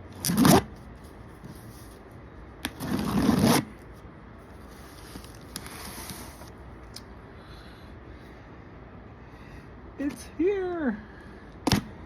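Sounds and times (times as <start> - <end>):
cardboard ripping and scraping: 0.1 - 0.8, 2.6 - 3.8, 4.7 - 6.5.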